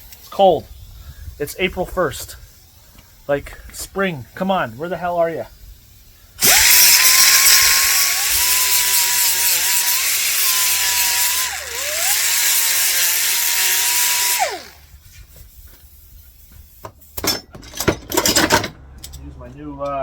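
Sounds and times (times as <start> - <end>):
angle grinder cutting sheet metal: 6.4 - 14.9
faint metal clatter: 16.2 - 20.0.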